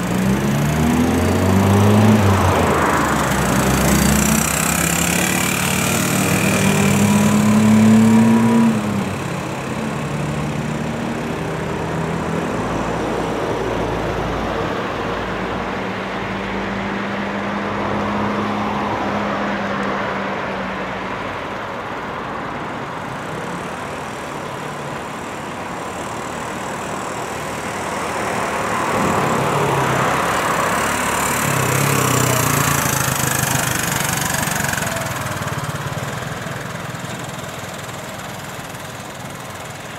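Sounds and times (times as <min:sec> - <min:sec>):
motorcycle engine running: 0:00.0 - 0:13.4, 0:22.6 - 0:39.9.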